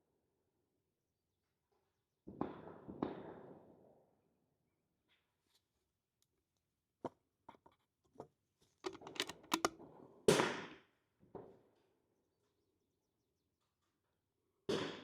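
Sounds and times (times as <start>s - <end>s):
sharp clicks and knocks: 8.9s - 9.7s.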